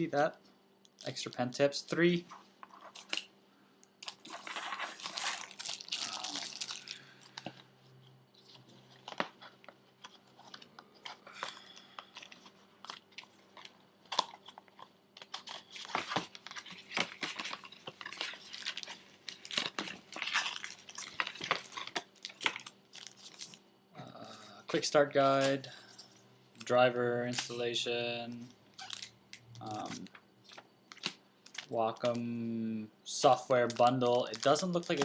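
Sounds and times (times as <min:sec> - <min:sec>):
packaging rustling and crinkling: 0:04.0 - 0:07.7, 0:08.4 - 0:23.6, 0:28.4 - 0:32.2, 0:33.3 - 0:35.0.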